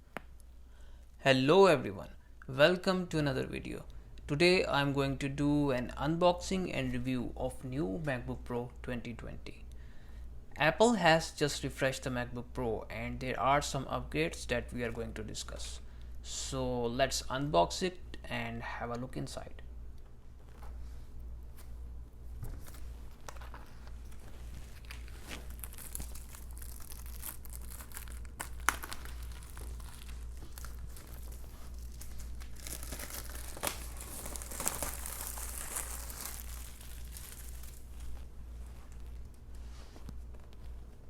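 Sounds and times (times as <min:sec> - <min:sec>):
steady low hum: 0:03.4 - 0:41.0
plastic wrapping tearing and crinkling: 0:22.6 - 0:39.5.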